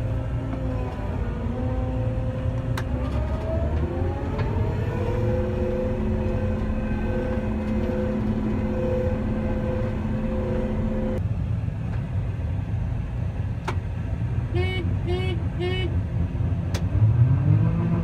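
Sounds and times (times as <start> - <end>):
droning machine whine: 0.0 - 11.8
low diesel engine rumble: 0.0 - 17.0.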